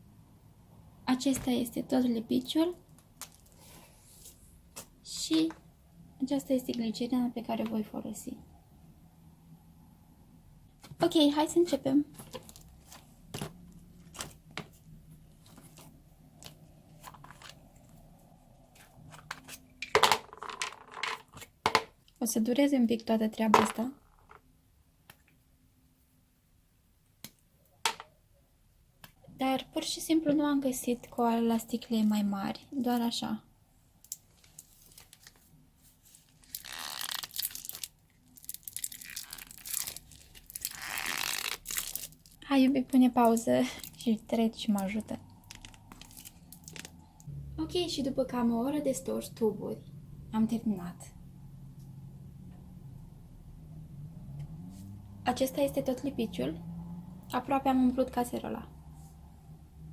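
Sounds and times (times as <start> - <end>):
plastic tubes clicking and crinkling: 19.0 - 22.2, 44.8 - 47.1
plastic bottles crinkling: 36.3 - 42.4, 45.4 - 47.0.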